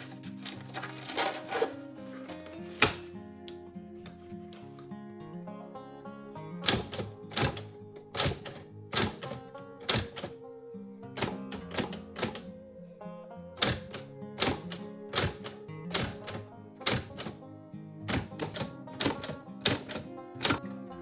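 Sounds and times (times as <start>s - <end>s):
background music: 0.0s - 21.0s
manual typewriter key strikes: 2.8s - 3.1s, 6.6s - 10.4s, 11.2s - 12.5s, 13.6s - 17.4s, 18.1s - 20.6s.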